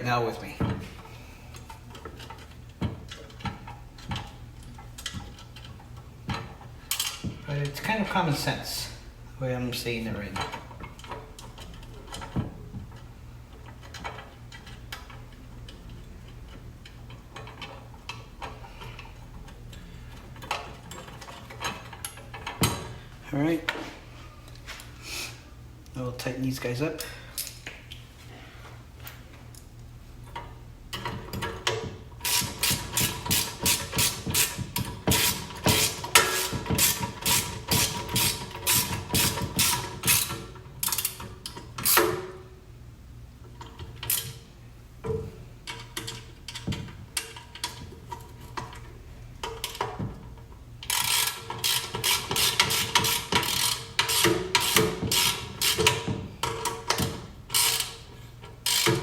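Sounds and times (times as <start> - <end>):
ratchet wrench clicking: 32.2 - 41.2, 50.8 - 58.0, 58.6 - 59.0.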